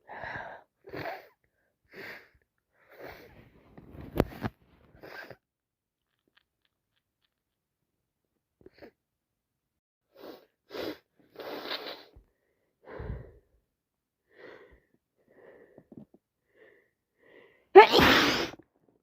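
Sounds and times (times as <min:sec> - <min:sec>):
woman sneezing: 0:17.8 - 0:18.6.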